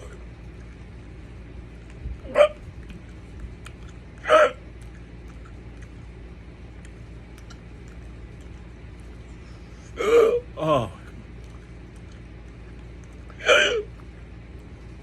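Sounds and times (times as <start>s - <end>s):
man hiccuping: 4.2s - 4.6s, 9.9s - 11.1s, 13.4s - 14.0s.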